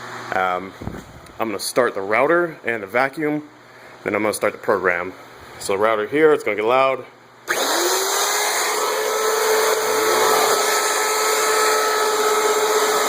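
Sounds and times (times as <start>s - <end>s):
router spindle motor whine: 7.5s - 13.0s
vacuum motor rising in pitch: 7.5s - 13.0s.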